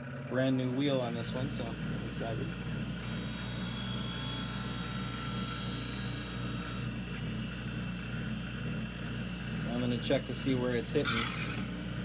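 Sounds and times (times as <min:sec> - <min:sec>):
grinding machine motor hum: 0:00.0 - 0:12.0
blade grinding on wheel: 0:01.2 - 0:06.9, 0:11.0 - 0:11.7.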